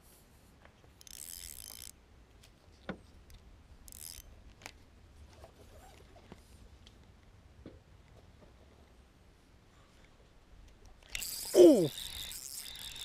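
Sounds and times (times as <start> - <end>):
reel clicking: 1.0 - 2.0, 3.9 - 4.2, 11.1 - 13.0
fishing line hissing off reel: 11.2 - 13.0.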